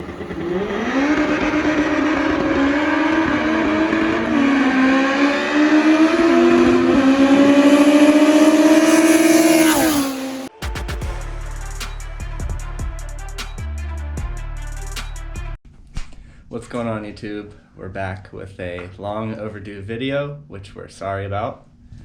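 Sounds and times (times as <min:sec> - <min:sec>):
car engine accelerating: 0:00.0 - 0:10.6.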